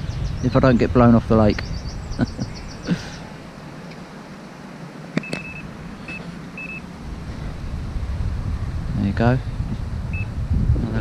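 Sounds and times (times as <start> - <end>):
wind buffeting microphone: 0.0 - 11.0
fishing bite alarm beeping: 5.2 - 6.9.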